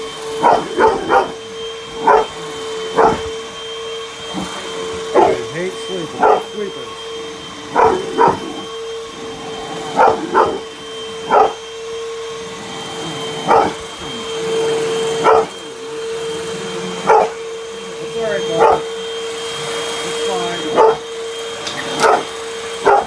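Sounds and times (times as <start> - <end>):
vacuum cleaner motor humming: 0.0 - 23.0
puppy barking: 0.4 - 3.4, 4.3 - 6.9, 7.6 - 8.7, 9.7 - 11.6, 13.1 - 15.6, 16.8 - 17.5, 18.2 - 19.0, 20.6 - 23.0.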